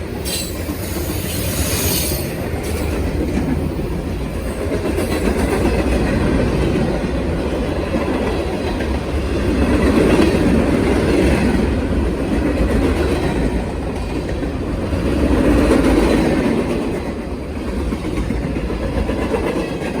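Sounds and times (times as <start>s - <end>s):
train wheels rumbling on rails: 0.0s - 20.0s.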